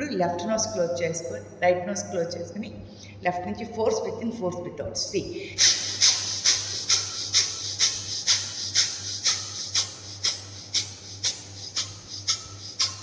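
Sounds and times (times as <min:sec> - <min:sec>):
rapid breathing through nostril: 0:05.4 - 0:13.0.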